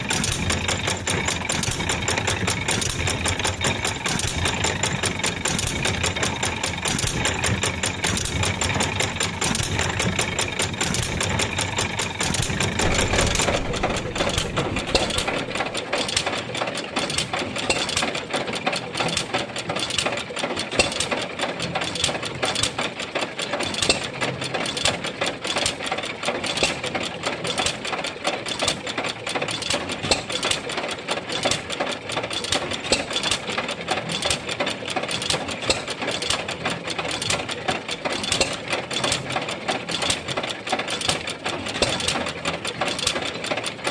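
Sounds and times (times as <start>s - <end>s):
stationary engine clattering: 0.0s - 43.9s
deep low rumble: 12.2s - 16.1s.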